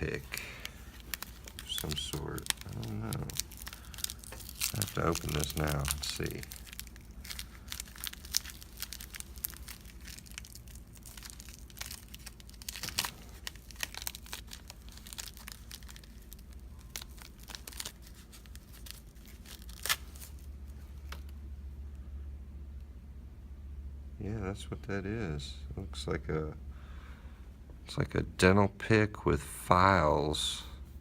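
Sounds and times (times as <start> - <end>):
packaging tearing and crinkling: 0.0 - 21.3.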